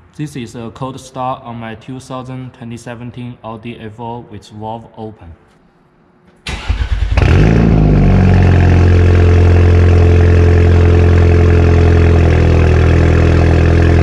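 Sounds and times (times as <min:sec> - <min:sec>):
engine cranking: 0:06.5 - 0:07.4
car engine revving then idling: 0:06.5 - 0:14.0.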